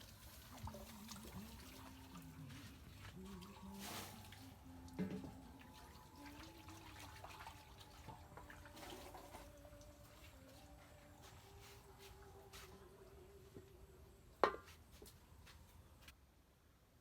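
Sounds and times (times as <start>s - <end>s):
splashing and trickling water: 0.0s - 12.3s.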